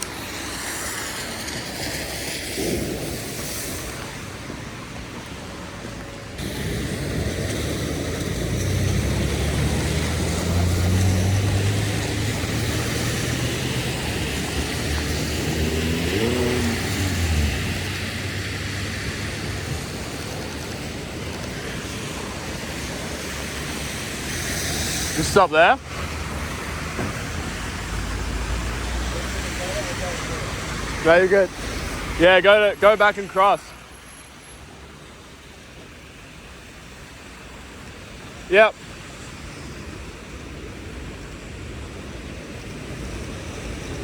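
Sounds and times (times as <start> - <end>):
heavy rain hissing on street: 0.0 - 44.0
heavy vehicle passing: 5.8 - 33.7.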